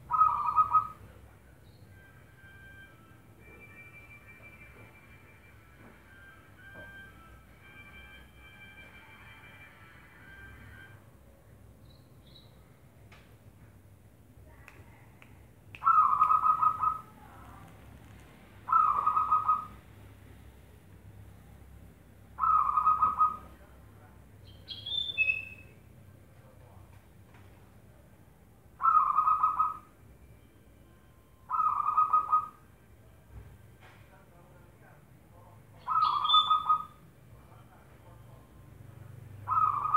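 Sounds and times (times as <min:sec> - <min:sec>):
dove cooing: 0:00.1 - 0:01.0, 0:18.7 - 0:19.8, 0:22.4 - 0:23.5, 0:28.8 - 0:29.9, 0:31.5 - 0:32.6, 0:39.5 - 0:39.9
high falling chirp: 0:18.7 - 0:19.8, 0:24.4 - 0:25.8, 0:35.8 - 0:37.0.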